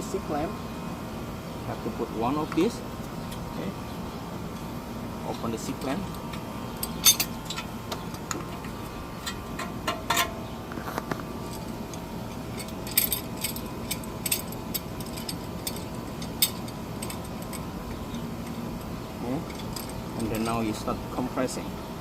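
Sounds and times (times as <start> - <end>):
faint steady hum: 0.0 - 22.0
metal clamp clicks and clinks: 6.8 - 7.7, 11.5 - 18.6, 19.5 - 20.6.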